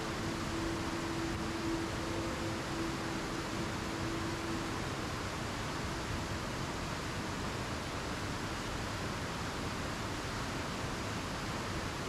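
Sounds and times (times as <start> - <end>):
river rushing over cascades: 0.0 - 7.2.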